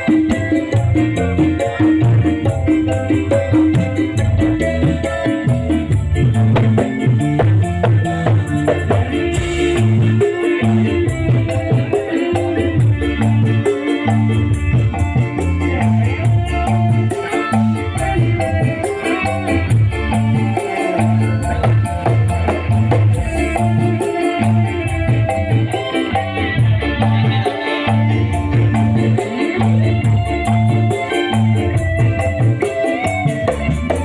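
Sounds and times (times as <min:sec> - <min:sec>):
drum band music: 0:00.0 - 0:34.0
shaker percussion: 0:00.0 - 0:34.0.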